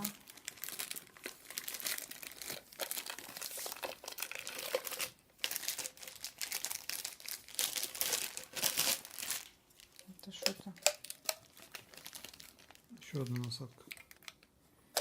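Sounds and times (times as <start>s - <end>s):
plastic packaging crinkling: 0.0s - 15.0s.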